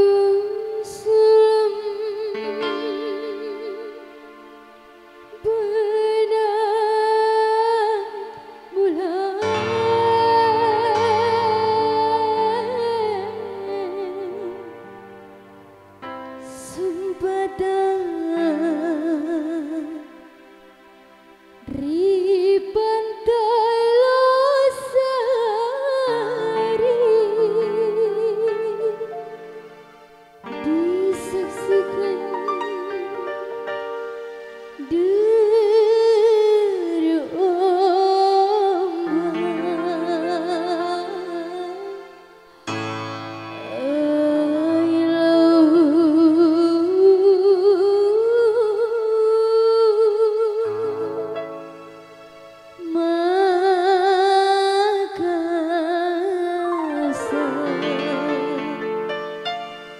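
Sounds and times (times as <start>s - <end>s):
lead melody with vibrato: 0.0s - 59.9s
sustained keyboard chords: 9.4s - 16.5s.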